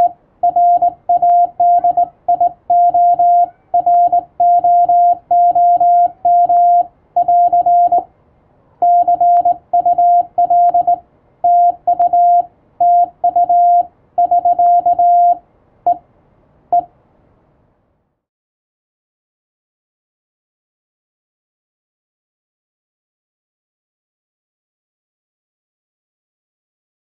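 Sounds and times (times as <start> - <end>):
morse code tone: 0.0 - 8.0, 8.8 - 16.0.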